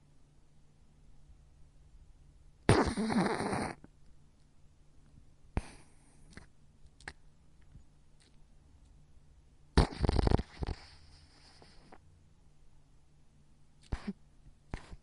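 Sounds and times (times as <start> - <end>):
dog snoring: 2.7 - 3.8, 9.8 - 12.0
dog snuffling: 9.8 - 12.0.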